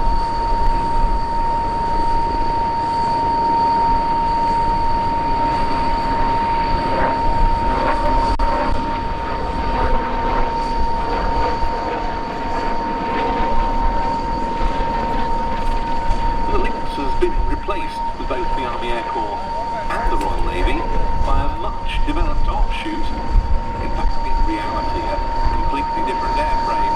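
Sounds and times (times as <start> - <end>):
helicopter engine and rotor: 0.0 - 26.9
high turbine whine: 0.0 - 26.9.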